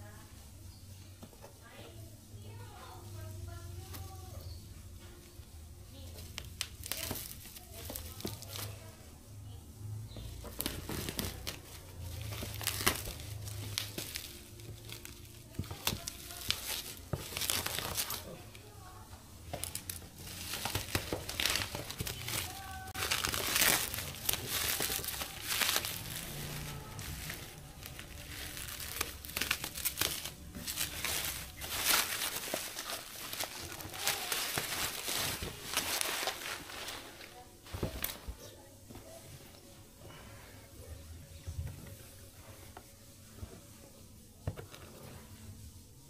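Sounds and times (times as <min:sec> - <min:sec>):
plastic and paper crinkling: 0:05.9 - 0:09.1, 0:10.1 - 0:39.2
sharp crackles: 0:19.6 - 0:37.3.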